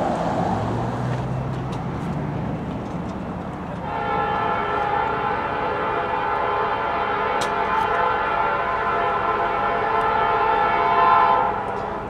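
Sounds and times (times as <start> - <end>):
train rumble: 0.0 - 12.0
locomotive air horn chord: 3.8 - 12.0.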